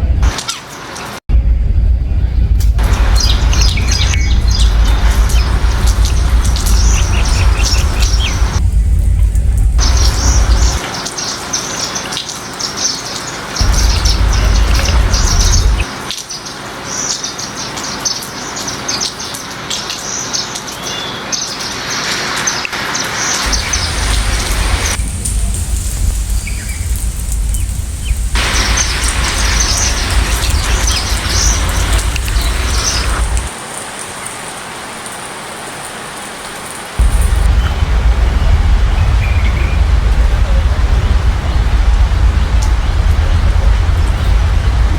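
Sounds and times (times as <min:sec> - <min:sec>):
deep low rumble: 0:00.0 - 0:00.4, 0:01.3 - 0:10.8, 0:13.6 - 0:15.9, 0:23.5 - 0:33.5, 0:37.0 - 0:44.9
steady rain falling: 0:02.1 - 0:44.9
small birds chirping: 0:02.8 - 0:19.3, 0:23.4 - 0:33.5, 0:37.0 - 0:44.8.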